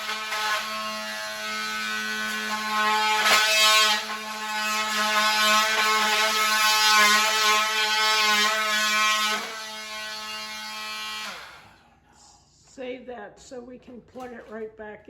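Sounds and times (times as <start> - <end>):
power tool buzzing whine: 0.0 - 11.7.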